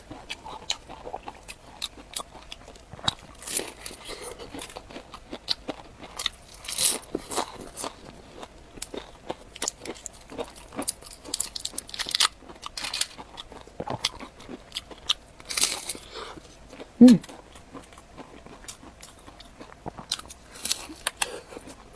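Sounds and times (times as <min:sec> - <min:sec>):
wet chewing mouth noises: 0:00.0 - 0:21.9
crisp bites and crunches: 0:08.8 - 0:16.2.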